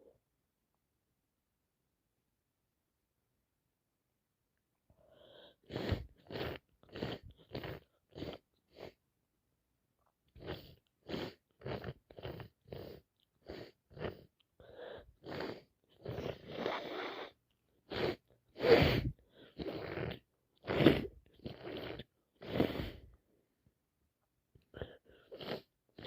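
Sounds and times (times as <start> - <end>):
woman sniffing: 5.1 - 9.0, 10.4 - 21.1, 21.7 - 23.1, 24.7 - 25.7.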